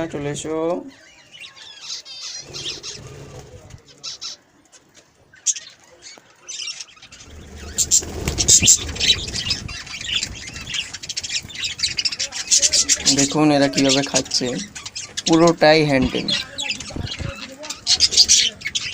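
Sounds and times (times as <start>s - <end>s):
budgerigars chirping: 0.9s - 4.5s, 5.3s - 18.9s
wing flutter and rustling: 7.0s - 18.9s.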